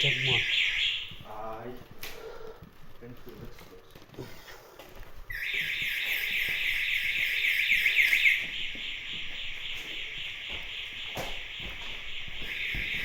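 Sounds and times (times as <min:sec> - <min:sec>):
warbling electronic siren: 0:00.0 - 0:01.3, 0:05.3 - 0:13.0.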